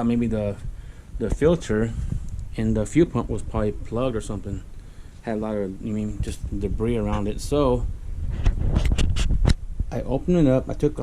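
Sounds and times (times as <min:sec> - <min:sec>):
low rumble: 0:05.6 - 0:10.1.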